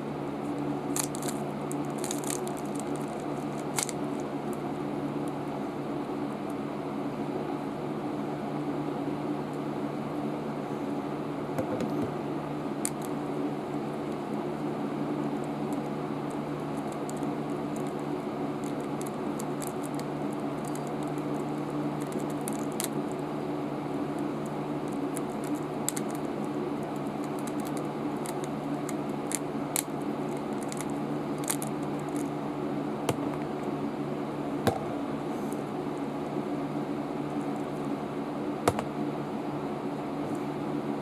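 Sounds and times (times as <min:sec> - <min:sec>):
steady low hum: 0:00.0 - 0:41.0
plastic puzzle cube clicking: 0:01.0 - 0:04.0, 0:30.5 - 0:32.3.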